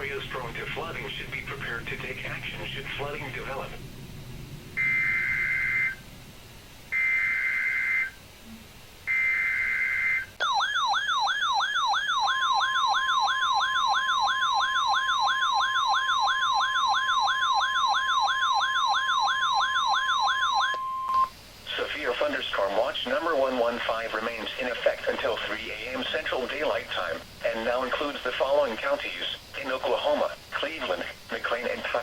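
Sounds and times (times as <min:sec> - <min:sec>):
steady warning tone: 0:00.0 - 0:32.0
warbling siren alarm: 0:04.8 - 0:06.1, 0:06.9 - 0:08.2, 0:09.1 - 0:21.3.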